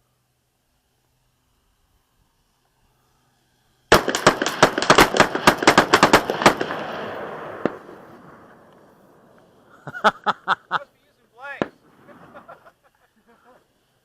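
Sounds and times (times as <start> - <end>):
guns firing in volley: 3.9 - 8.6, 11.5 - 12.4.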